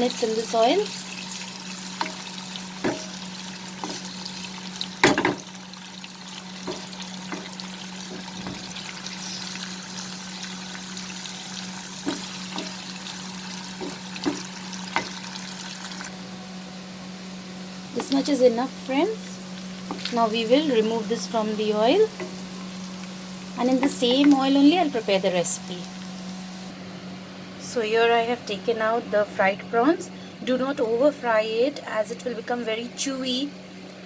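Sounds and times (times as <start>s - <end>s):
prawns sizzling in oil: 0.0s - 26.7s
stirring clicks: 12.0s - 13.0s, 19.8s - 20.2s.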